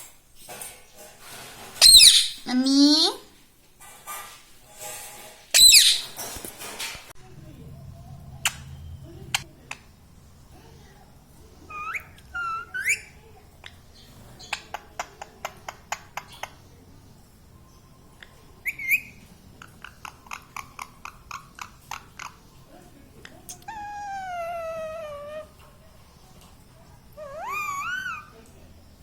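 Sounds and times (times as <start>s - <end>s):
parrot whistling: 1.8s - 2.4s, 5.6s - 6.1s, 27.2s - 28.3s.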